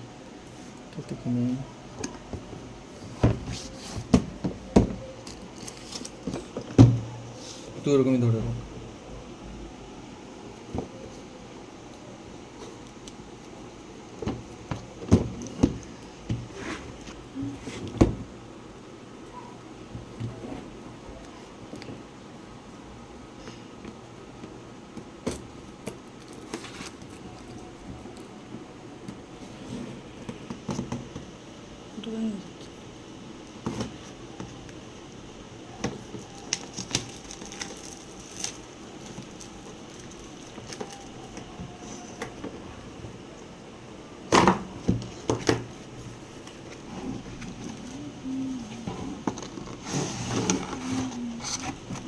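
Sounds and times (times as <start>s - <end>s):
low room hiss: 0.0s - 52.0s
packaging clicks and crackles: 4.9s - 6.8s, 35.7s - 42.5s.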